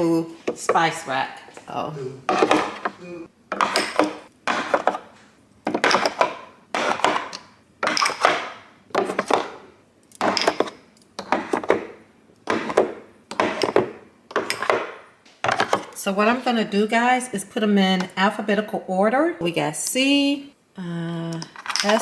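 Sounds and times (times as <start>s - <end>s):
jars clacking into wooden rack: 2.3s - 5.1s, 5.7s - 9.6s, 10.2s - 16.0s.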